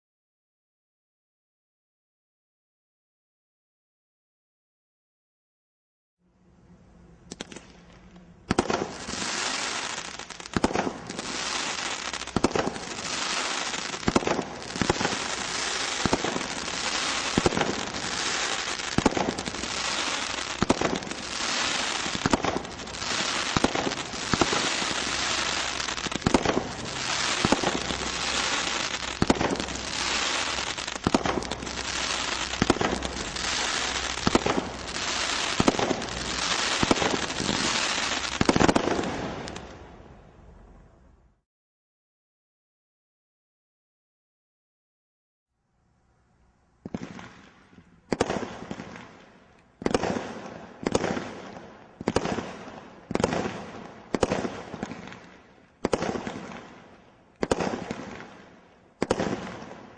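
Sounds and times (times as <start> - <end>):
firework crackle: 7.3 - 39.9, 46.8 - 59.9
firework bangs: 8.5 - 39.8, 46.8 - 49.2, 49.8 - 56.8, 57.4 - 58.4, 59.0 - 59.9.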